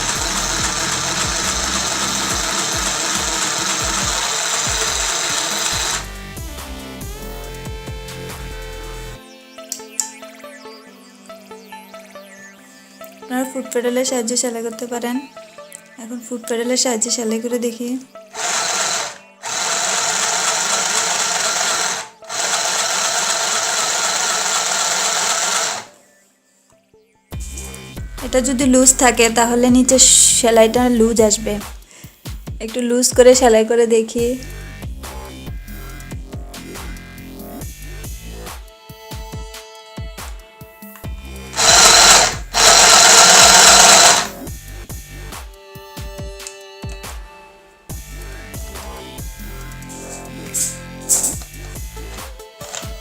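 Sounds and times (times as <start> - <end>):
sewing machine running: 0.0 - 6.1, 18.4 - 26.0, 41.6 - 44.5, 52.1 - 53.0.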